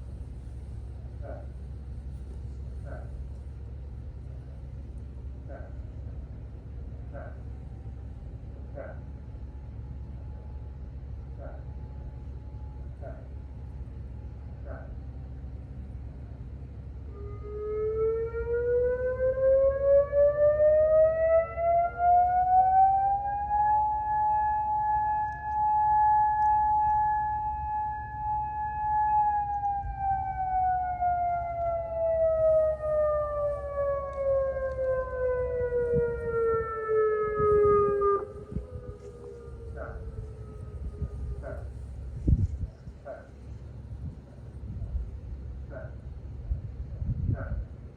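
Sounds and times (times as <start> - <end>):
distant siren: 5.4 - 46.1
warning siren wailing: 16.6 - 43.3.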